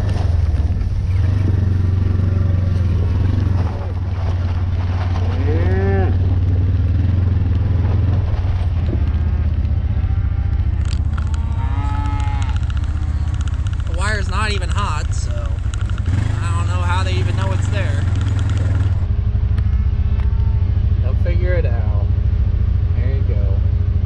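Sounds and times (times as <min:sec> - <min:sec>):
vehicle engine hum: 0:00.0 - 0:24.0
cattle mooing: 0:01.3 - 0:07.5, 0:09.8 - 0:19.0.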